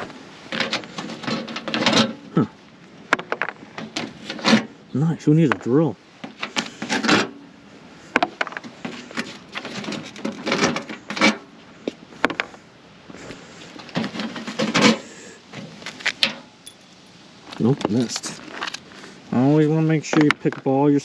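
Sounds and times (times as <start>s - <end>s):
scrapes and knocks on mailbox: 0.0s - 2.5s, 3.1s - 4.7s, 6.2s - 7.4s, 8.1s - 12.6s, 13.8s - 16.5s.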